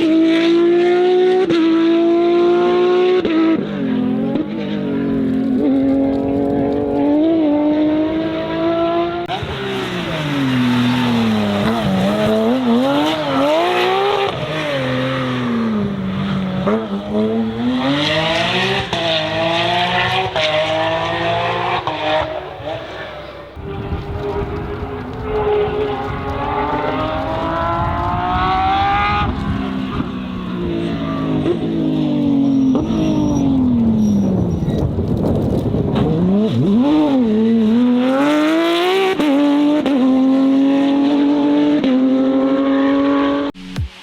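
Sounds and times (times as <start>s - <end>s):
car engine at full throttle: 0.0s - 44.0s
tyre squeal: 29.9s - 34.9s.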